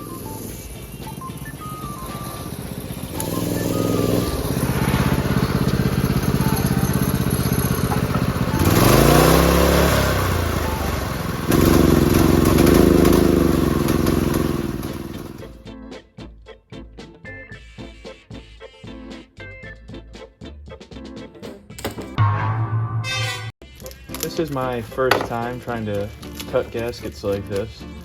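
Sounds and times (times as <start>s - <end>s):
mini bike engine revving: 0.0s - 15.5s.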